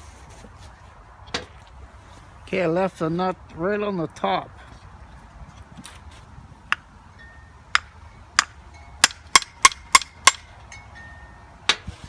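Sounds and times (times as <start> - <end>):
fan parts clicking and knocking: 7.7 - 10.9, 11.7 - 11.9.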